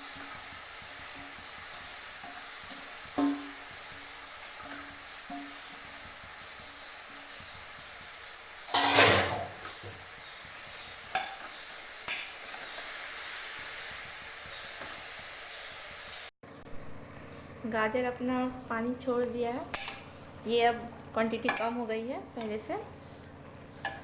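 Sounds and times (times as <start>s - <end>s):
carrots sizzling in ghee: 0.0s - 16.3s
loud scrape or clatter: 8.7s - 9.6s.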